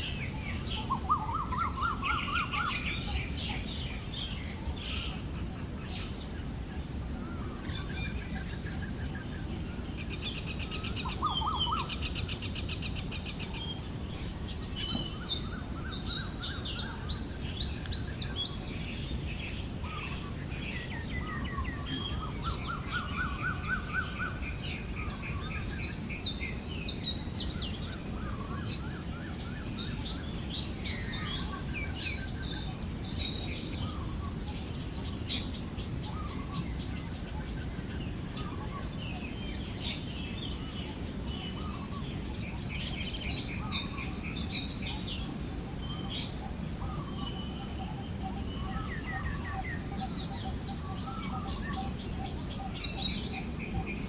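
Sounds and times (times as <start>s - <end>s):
birds chirping and trilling: 7.2s - 54.0s.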